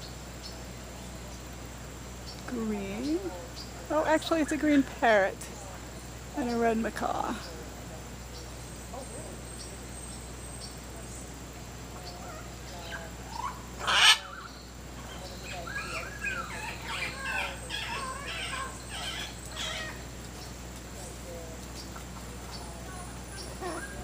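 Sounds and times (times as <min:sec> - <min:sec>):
parrots chattering: 0:08.3 - 0:24.0
parrot squawking: 0:12.2 - 0:14.5, 0:15.1 - 0:20.0, 0:23.3 - 0:24.0.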